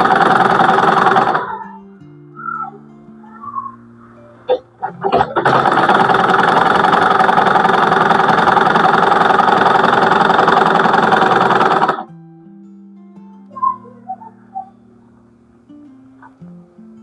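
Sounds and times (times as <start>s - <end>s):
electric sewing machine running: 0.0s - 1.6s, 4.4s - 12.0s.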